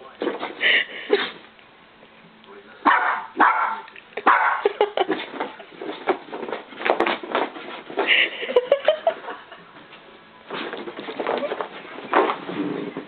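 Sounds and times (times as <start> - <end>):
dog pattering and scuffling: 0.1 - 0.6, 4.2 - 8.3, 9.8 - 13.0
dog barking: 2.8 - 4.8.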